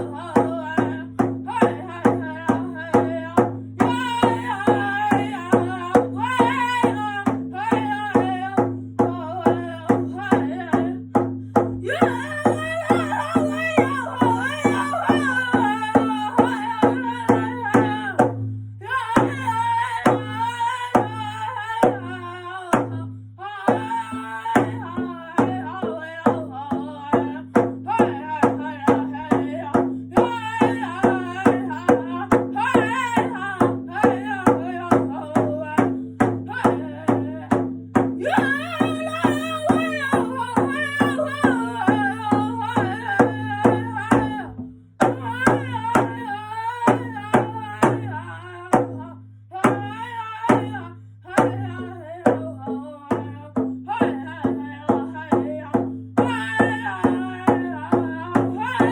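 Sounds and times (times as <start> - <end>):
person singing: 0.0 - 11.2, 11.8 - 58.9
steady drumbeat: 0.0 - 58.9.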